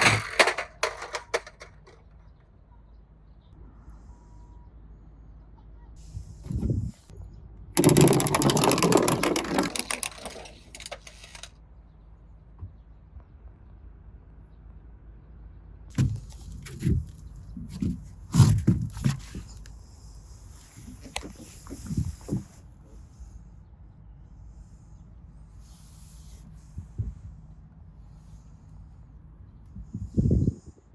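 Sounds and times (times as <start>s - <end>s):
knocks of toys being handled: 0.0s - 2.1s, 7.8s - 11.5s
toy car rattling down track: 0.0s - 2.2s, 7.8s - 11.5s.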